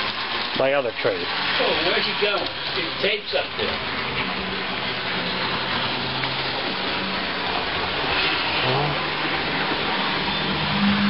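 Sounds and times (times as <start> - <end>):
wheel and rail noise: 0.0 - 11.0
electric motor hum: 3.8 - 11.0.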